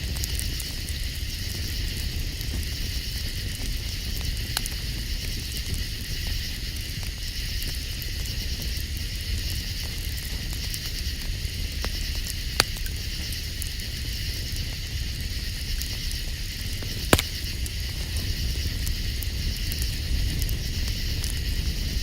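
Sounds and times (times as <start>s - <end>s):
campfire crackling: 10.0s - 21.1s
night insects chirring: 10.5s - 22.0s
fire popping sharply: 17.1s - 18.0s.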